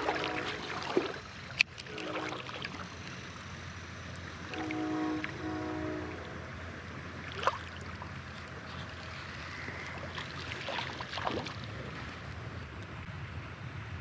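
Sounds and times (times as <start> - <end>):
creek water running: 0.0 - 13.1.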